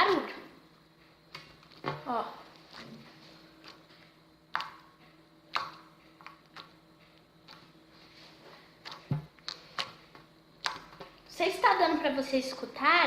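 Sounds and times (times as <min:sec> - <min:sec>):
stiff slime cracking and popping: 0:10.6 - 0:11.0.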